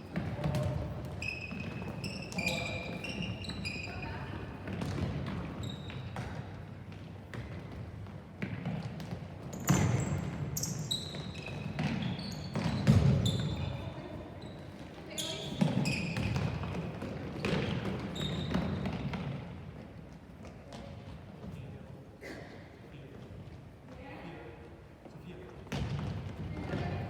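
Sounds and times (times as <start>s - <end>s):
short high squeaks: 1.2s - 4.1s.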